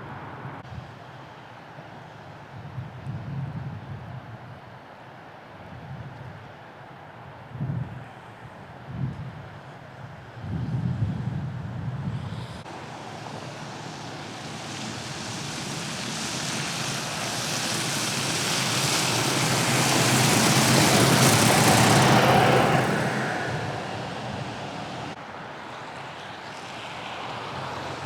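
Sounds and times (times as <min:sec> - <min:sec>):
vehicle passing: 0:12.3 - 0:25.2.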